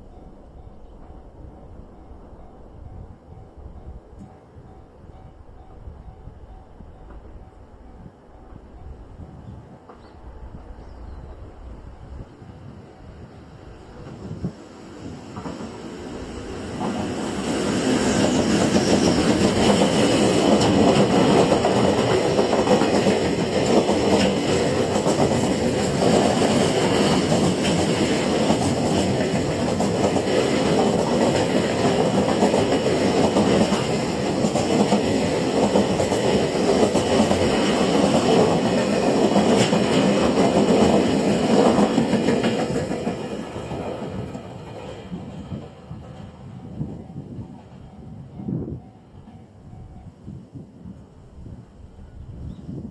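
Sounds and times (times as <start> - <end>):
train wheels rushing on rails: 11.5 - 50.6.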